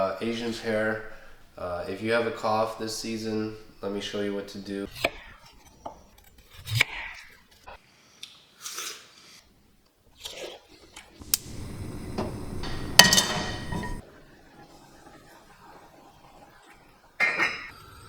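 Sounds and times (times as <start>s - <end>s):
utensils and dishes knocking: 12.2s - 14.0s.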